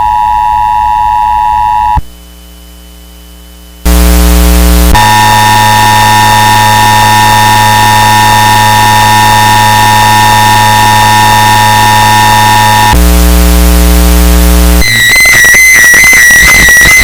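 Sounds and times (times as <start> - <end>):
low buzz: 0.0 - 17.0
two-tone alarm: 5.0 - 13.0, 14.8 - 17.0.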